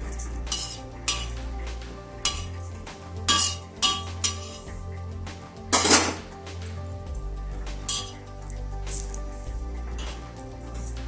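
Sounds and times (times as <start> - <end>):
utensil clinking and scraping on pan: 0.0 - 1.5, 2.2 - 4.8, 5.7 - 6.2, 7.9 - 8.2, 9.9 - 10.2
background music: 0.0 - 11.0.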